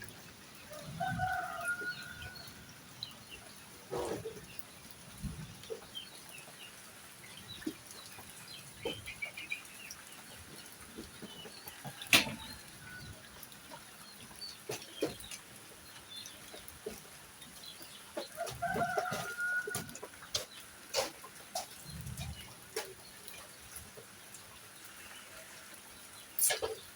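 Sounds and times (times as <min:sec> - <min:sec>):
poultry clucking and calling: 0:00.8 - 0:04.5, 0:07.5 - 0:24.2.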